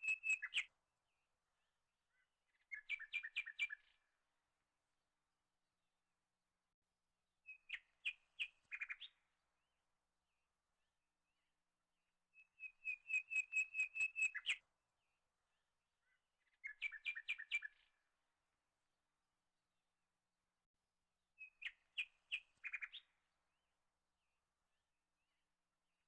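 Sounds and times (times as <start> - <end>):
small bird chirping: 0.0 - 0.7, 2.1 - 4.0, 7.5 - 9.2, 12.4 - 14.6, 16.0 - 17.9, 21.4 - 23.2.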